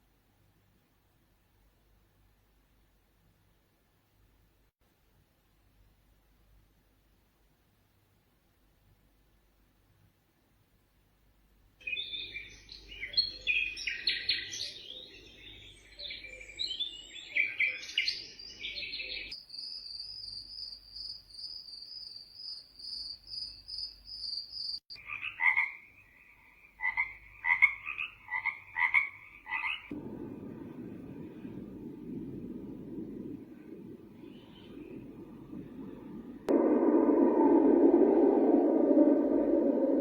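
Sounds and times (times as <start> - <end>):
short chirping calls: 11.8 - 26.6
frogs croaking: 18.6 - 40.0
low steady noise: 29.9 - 40.0
steady pulsing high trill: 35.0 - 40.0.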